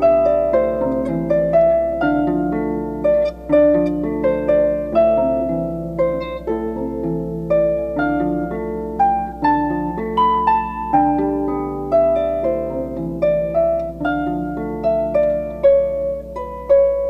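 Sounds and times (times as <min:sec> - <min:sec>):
solo harp playing: 0:00.0 - 0:17.0.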